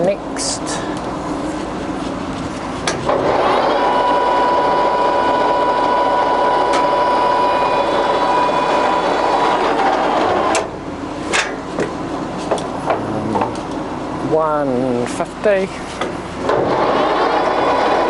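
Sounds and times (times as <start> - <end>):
lathe gear whine: 3.0 - 11.1, 16.3 - 18.0.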